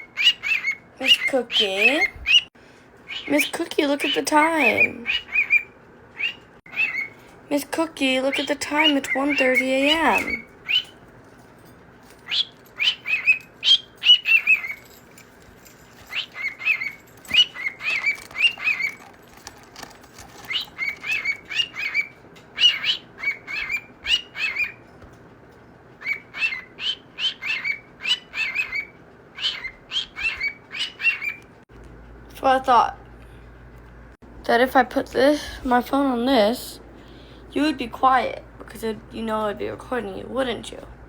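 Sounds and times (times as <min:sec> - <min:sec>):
parrot chirping: 0:00.0 - 0:02.5, 0:03.1 - 0:07.3, 0:08.0 - 0:11.0, 0:12.2 - 0:15.0, 0:15.9 - 0:24.8, 0:26.0 - 0:31.4.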